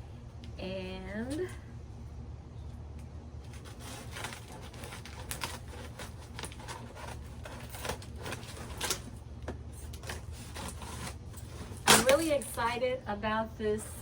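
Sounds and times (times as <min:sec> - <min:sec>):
cardboard packaging rustling: 0:03.4 - 0:12.6.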